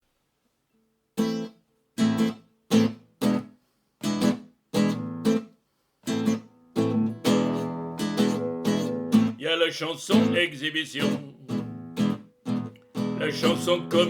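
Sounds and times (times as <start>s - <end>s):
acoustic guitar strumming chords: 4.1s - 5.4s, 6.1s - 14.0s.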